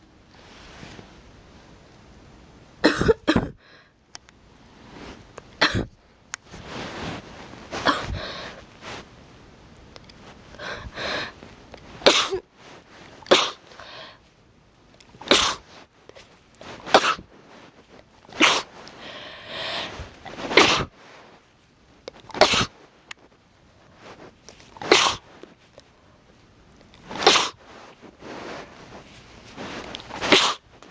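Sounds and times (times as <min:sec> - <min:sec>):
person sneezing: 0:05.6 - 0:05.9, 0:07.8 - 0:08.5, 0:12.0 - 0:12.4, 0:13.3 - 0:14.2, 0:15.2 - 0:15.7, 0:16.9 - 0:17.3, 0:18.3 - 0:20.9, 0:22.3 - 0:22.8, 0:24.8 - 0:25.3, 0:27.1 - 0:27.6, 0:30.1 - 0:30.7.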